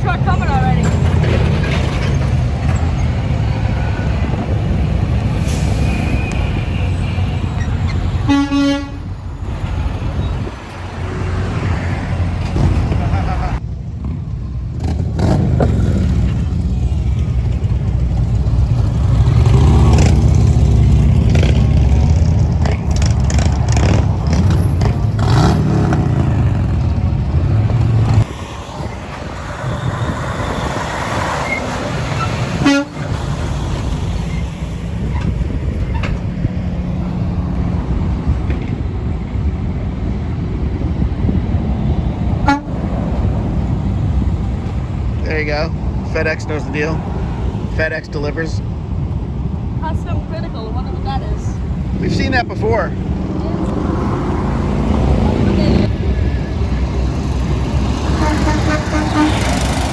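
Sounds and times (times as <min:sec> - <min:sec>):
truck horns honking: 0:00.0 - 0:01.3, 0:05.3 - 0:11.3, 0:29.6 - 0:34.4, 0:42.3 - 0:43.2, 0:57.6 - 0:59.9
trucks passing with engine rumble: 0:00.0 - 0:59.9.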